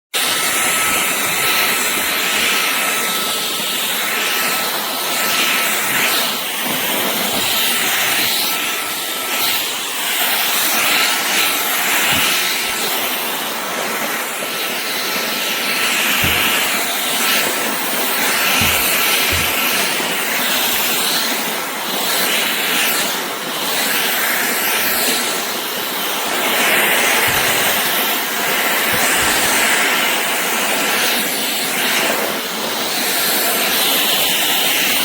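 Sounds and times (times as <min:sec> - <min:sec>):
stick vacuum running: 0:00.2 - 0:35.0.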